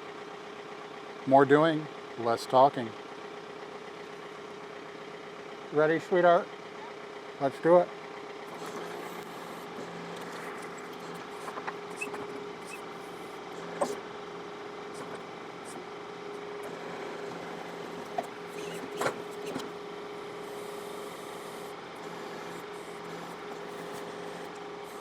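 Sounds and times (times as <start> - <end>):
tractor diesel engine running: 0.0 - 25.0.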